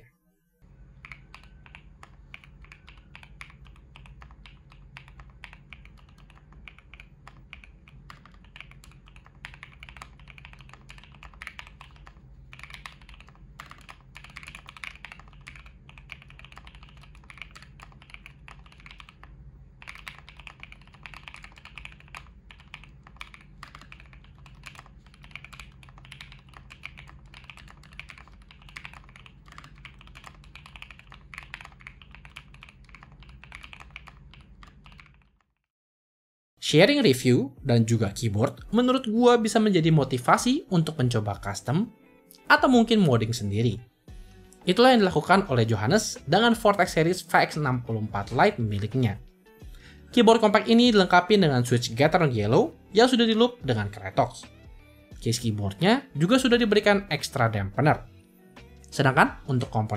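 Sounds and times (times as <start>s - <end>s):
mechanical keyboard typing: 1.0s - 35.5s.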